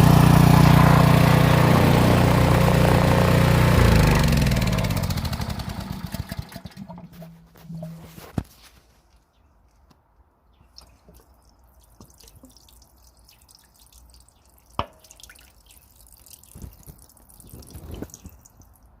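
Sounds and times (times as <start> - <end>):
water dripping: 6.1 - 8.3, 10.6 - 19.0.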